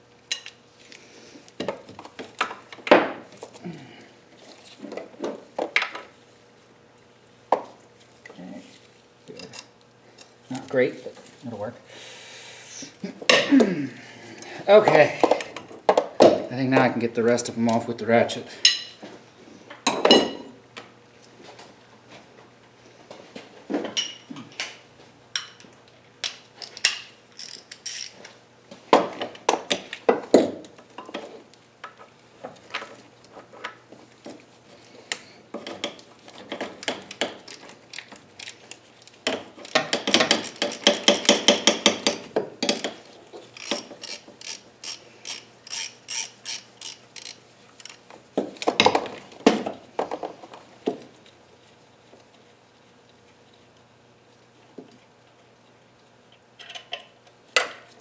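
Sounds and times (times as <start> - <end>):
socket ratchet clicking: 27.4 - 28.2, 43.6 - 48.0.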